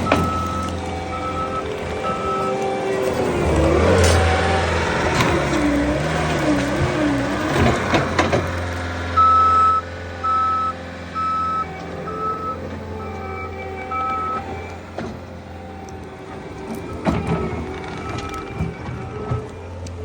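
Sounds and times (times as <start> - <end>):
reversing alarm beeping: 0.0 - 4.2, 9.1 - 16.0, 16.7 - 19.6
engine running: 0.0 - 20.0.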